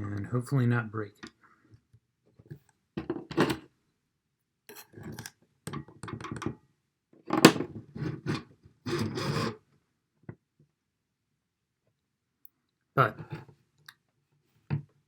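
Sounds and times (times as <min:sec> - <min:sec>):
scraping on circuit board: 0:07.9 - 0:09.6.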